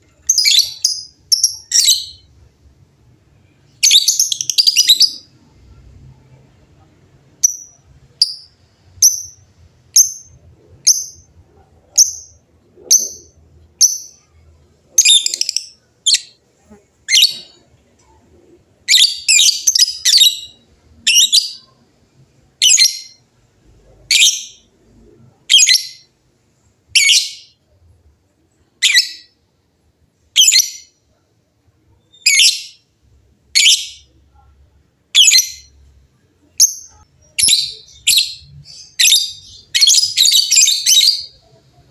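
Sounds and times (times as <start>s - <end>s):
lovebirds chirping: 0.0s - 2.5s, 3.4s - 5.8s, 6.8s - 17.7s, 18.8s - 21.8s, 22.6s - 23.2s, 24.0s - 24.7s, 25.4s - 26.2s, 27.0s - 27.6s, 32.1s - 32.9s, 33.6s - 34.2s, 35.1s - 35.9s, 36.5s - 41.9s.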